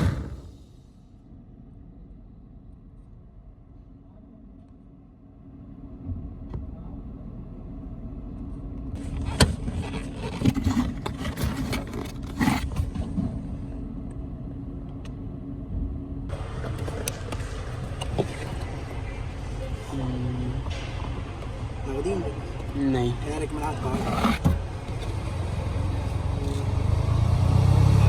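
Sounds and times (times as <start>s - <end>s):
car blower fan air rush: 0.0s - 1.0s.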